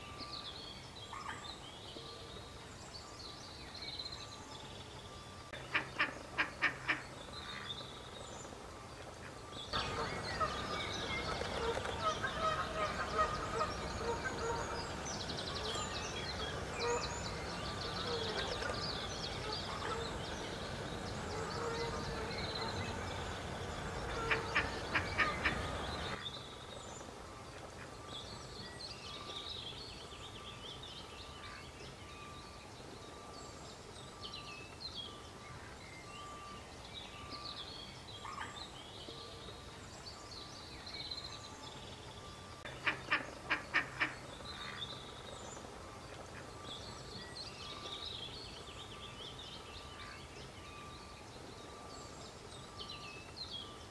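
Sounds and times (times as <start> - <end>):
duck quacking: 9.8 - 14.9, 19.4 - 20.3, 24.1 - 26.1.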